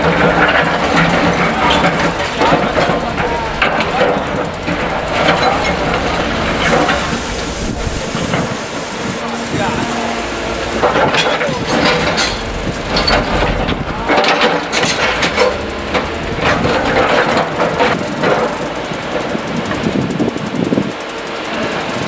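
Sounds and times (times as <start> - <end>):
rubble and metal crashing: 0.0 - 19.6
excavator diesel engines running: 0.0 - 22.0.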